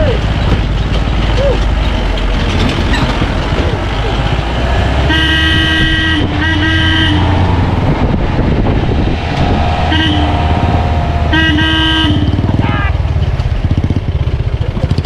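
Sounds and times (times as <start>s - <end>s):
jeep engine rumbling: 0.0s - 15.0s
rough ride noise: 0.0s - 15.0s
vehicle horn honking: 5.1s - 7.4s, 9.9s - 10.5s, 11.3s - 13.1s.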